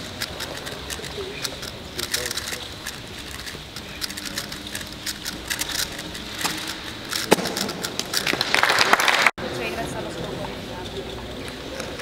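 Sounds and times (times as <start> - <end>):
puzzle cube layers clicking: 0.0 - 8.6.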